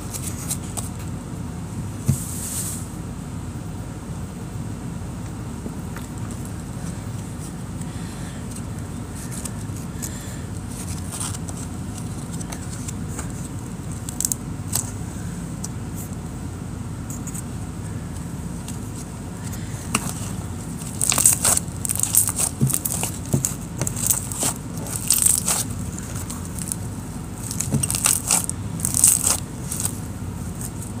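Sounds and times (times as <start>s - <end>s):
steady low hum: 0.0s - 31.0s
slime crackling and popping: 19.9s - 30.9s.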